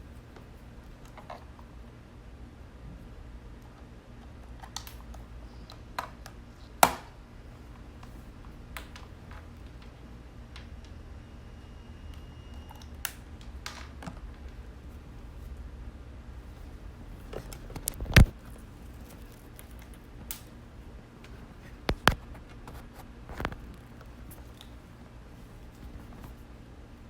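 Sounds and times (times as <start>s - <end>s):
faint steady hum: 0.0s - 27.0s
audio gear being handled: 17.2s - 20.3s.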